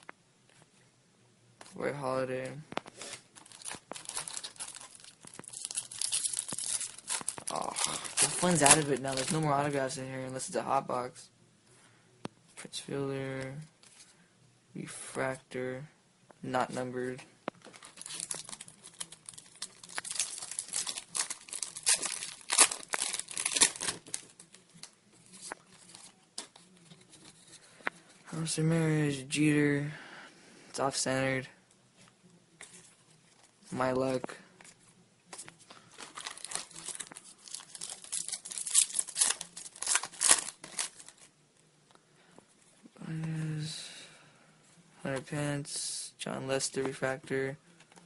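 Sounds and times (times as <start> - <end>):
foil wrapper crinkling and tearing: 3.0 - 9.6, 17.7 - 26.1, 35.7 - 41.3.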